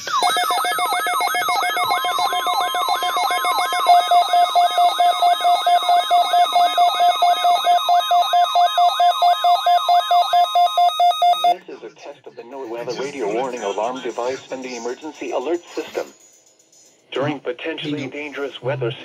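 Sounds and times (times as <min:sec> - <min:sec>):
electronic warbling alarm beeps: 0:00.0 - 0:11.6.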